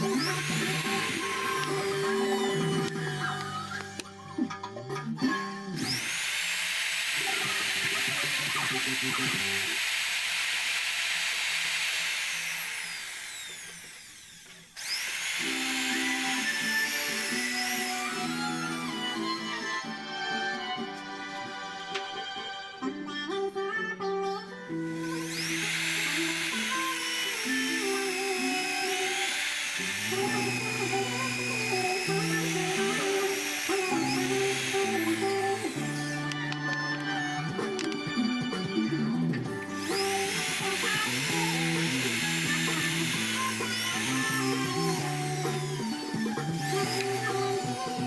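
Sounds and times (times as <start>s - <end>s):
electric motor whine spinning down: 0.0s - 4.3s, 5.3s - 19.8s, 24.8s - 48.0s
background music: 15.6s - 48.0s.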